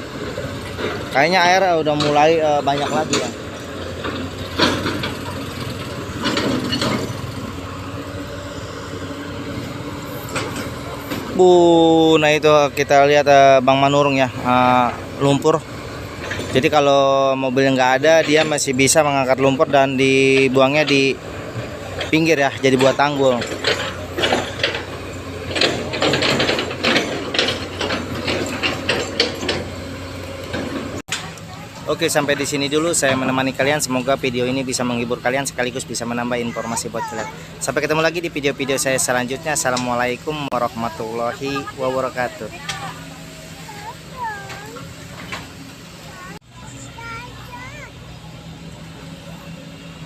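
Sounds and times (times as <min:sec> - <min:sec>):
excavator diesel engine running: 0:00.0 - 0:50.0
sharp metallic clanks: 0:00.7 - 0:07.7.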